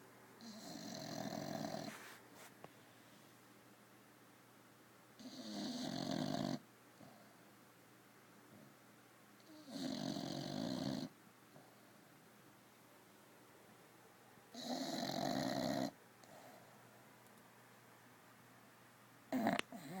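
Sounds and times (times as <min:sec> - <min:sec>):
dog snoring: 0:00.4 - 0:02.0, 0:05.2 - 0:07.2, 0:09.4 - 0:11.2, 0:14.5 - 0:16.0, 0:19.3 - 0:20.0.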